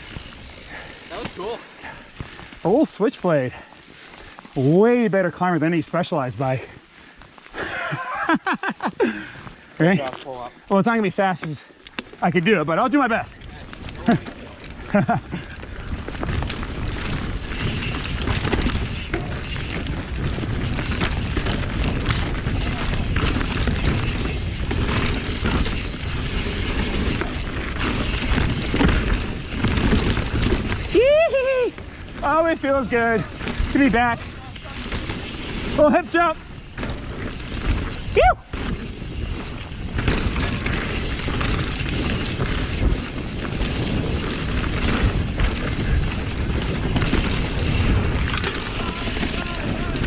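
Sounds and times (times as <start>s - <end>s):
bike knocks and rattles: 13.7s - 31.0s, 31.9s - 50.0s
wind buffeting microphone: 36.4s - 50.0s.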